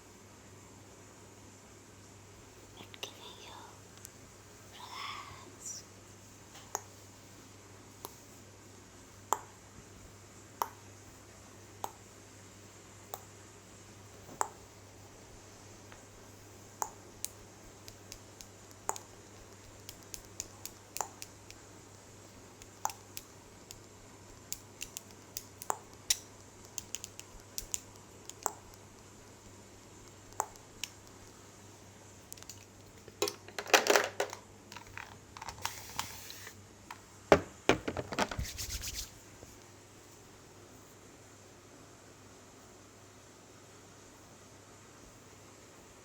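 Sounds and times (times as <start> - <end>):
sharp clicks and ticks: 16.8 - 21.6, 22.6 - 29.1, 30.0 - 31.4.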